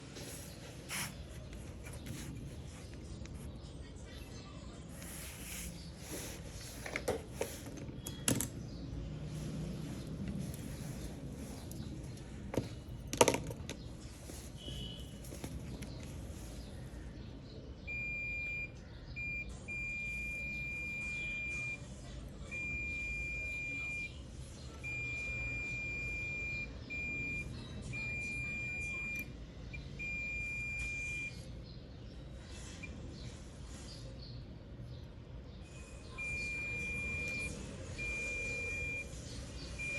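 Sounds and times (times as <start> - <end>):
multimeter continuity beeps: 17.8 - 21.8, 22.5 - 24.2, 24.8 - 31.5, 35.9 - 39.9.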